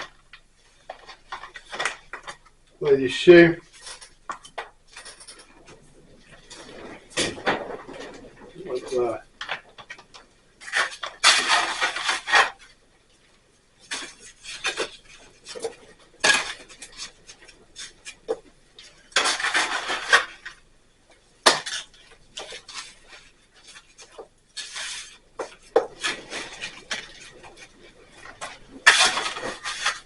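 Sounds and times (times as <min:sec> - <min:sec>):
metal tool scraping mortar: 0:28.2 - 0:30.0.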